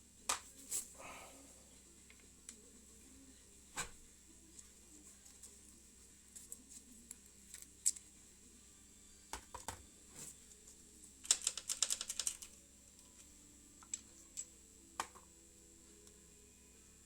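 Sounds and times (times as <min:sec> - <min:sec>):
rapid clicks: 0:11.2 - 0:12.5.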